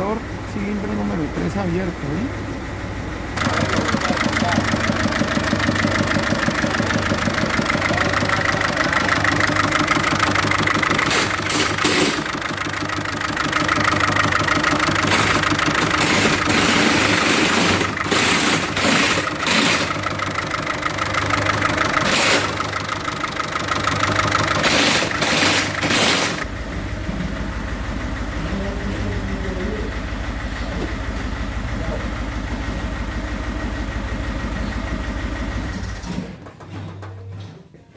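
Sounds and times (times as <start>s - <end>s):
diesel engine running roughly: 0.0s - 37.4s.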